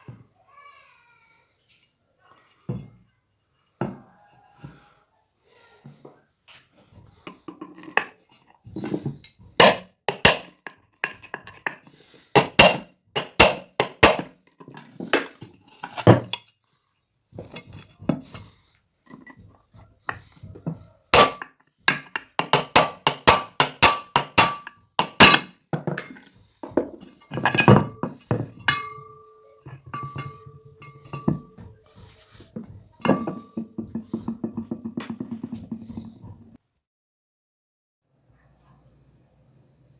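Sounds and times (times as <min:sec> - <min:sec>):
metallic knocks and clinks: 0:17.4 - 0:31.8, 0:33.0 - 0:36.0.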